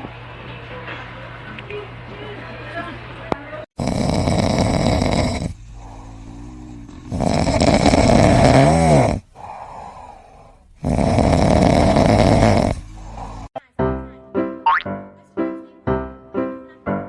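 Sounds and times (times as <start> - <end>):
pet snoring loudly: 3.8 - 13.6
whistling snore: 10.8 - 13.5.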